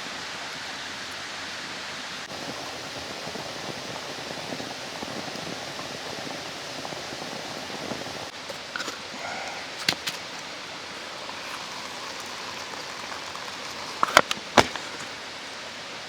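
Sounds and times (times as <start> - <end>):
stream water rushing: 0.0 - 16.0.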